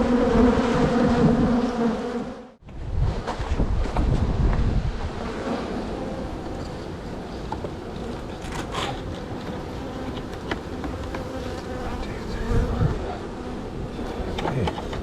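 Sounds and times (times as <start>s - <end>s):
bees buzzing: 5.2s - 15.0s.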